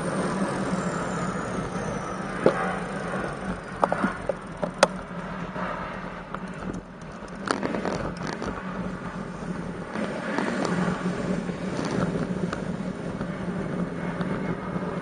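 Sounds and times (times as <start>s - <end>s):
wind and road noise: 0.0s - 15.0s
bicycle clicks and rattles: 3.4s - 5.6s, 6.3s - 8.9s.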